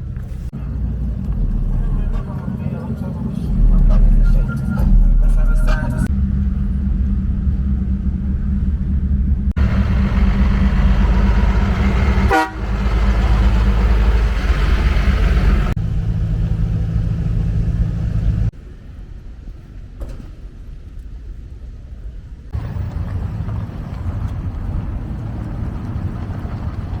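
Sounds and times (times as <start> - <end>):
vehicle engines rumbling: 0.0 - 27.0.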